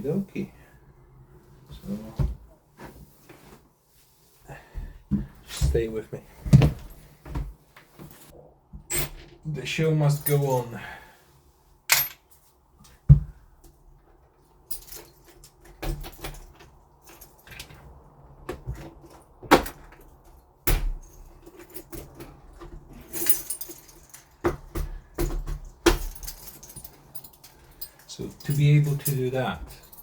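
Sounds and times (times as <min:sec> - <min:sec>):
keys jangling: 0:14.7 - 0:17.9, 0:19.1 - 0:30.0.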